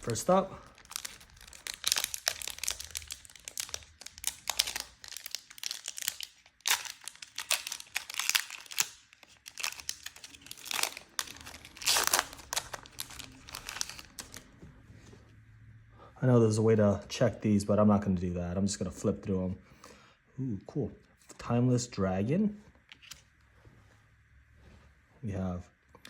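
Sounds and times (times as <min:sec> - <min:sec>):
foil wrapper tearing and crinkling: 0:00.0 - 0:14.4.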